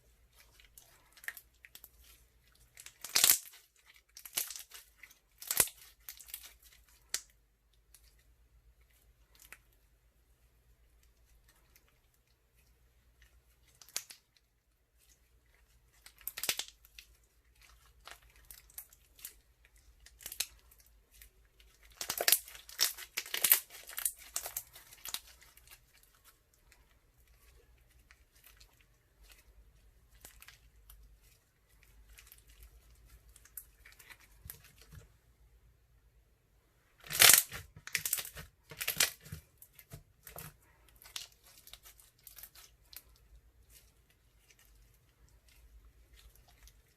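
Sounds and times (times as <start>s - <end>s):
slime crackling and popping: 0.3s - 7.3s, 13.5s - 14.4s, 15.9s - 35.0s, 37.0s - 46.9s.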